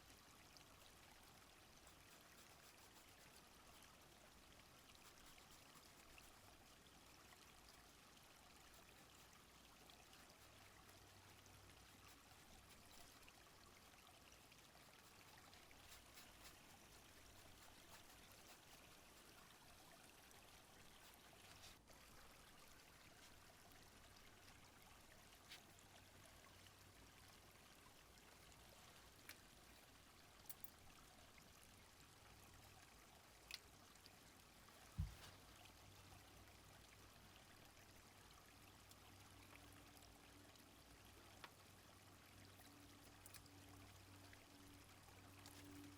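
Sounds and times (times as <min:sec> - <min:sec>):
faint clicks: 0:33.4 - 0:33.7, 0:43.0 - 0:43.5.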